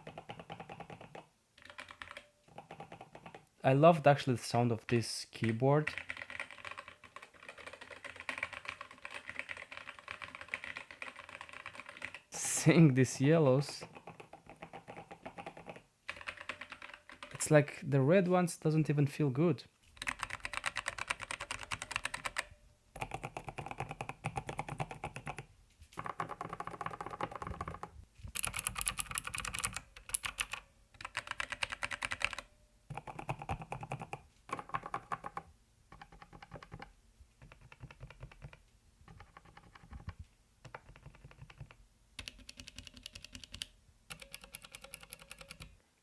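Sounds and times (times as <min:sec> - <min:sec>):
mechanical keyboard typing: 0:00.0 - 0:03.4, 0:05.4 - 0:12.6, 0:13.8 - 0:17.6, 0:20.0 - 0:45.8.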